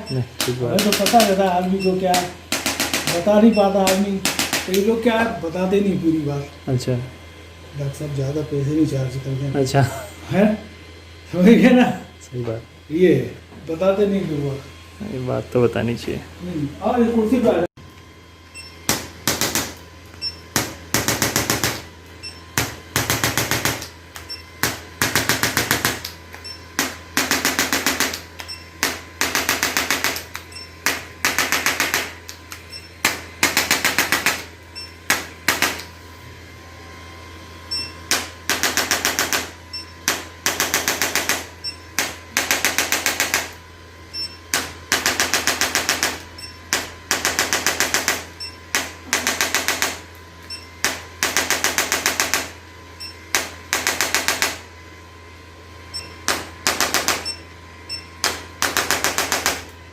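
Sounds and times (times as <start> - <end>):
steady low hum: 0.0 - 59.9
rapid mechanical taps: 0.4 - 4.9, 22.6 - 34.5, 38.1 - 43.6, 44.5 - 50.0, 53.3 - 54.6.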